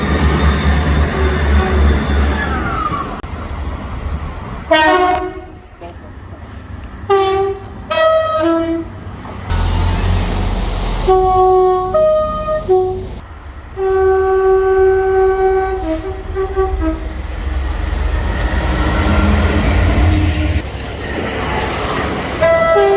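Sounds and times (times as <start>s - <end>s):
low train rumble: 0.0s - 22.9s
long steady horn blast: 4.7s - 6.0s, 7.1s - 8.9s, 10.9s - 13.2s, 13.8s - 17.2s, 22.4s - 22.9s
two-tone train horn blasts: 4.7s - 6.0s, 7.1s - 9.0s, 10.9s - 13.2s, 13.8s - 17.2s, 22.4s - 22.9s.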